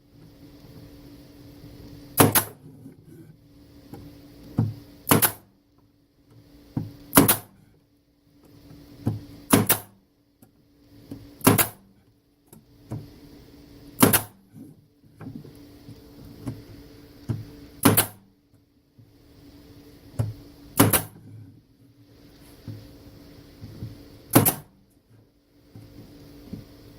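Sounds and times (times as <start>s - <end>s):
staple gun firing: 2.2s - 2.6s, 5.1s - 5.4s, 7.1s - 7.5s, 9.5s - 9.9s, 11.4s - 11.8s, 14.0s - 14.4s, 17.8s - 18.2s, 20.8s - 21.2s, 24.3s - 24.7s.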